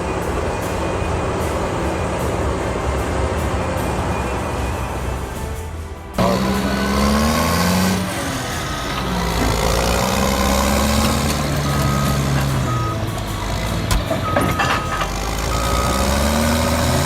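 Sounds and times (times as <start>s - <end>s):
heavy diesel engine under load: 0.0s - 17.0s
reversing alarm beeps: 6.6s - 17.0s.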